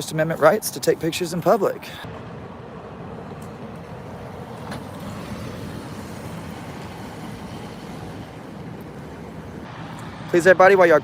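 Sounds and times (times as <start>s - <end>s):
road noise: 0.0s - 11.0s.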